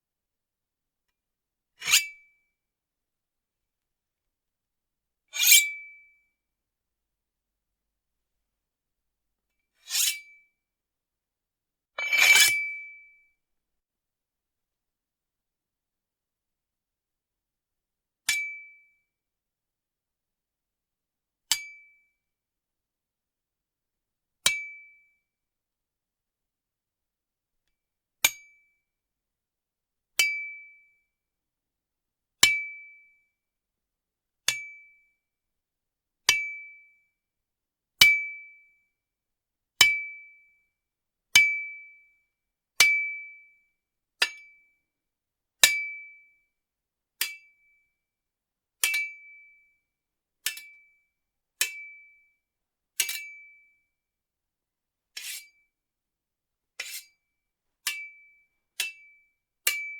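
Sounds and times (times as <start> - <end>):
metal sword blade clinks: 12.0 - 12.6.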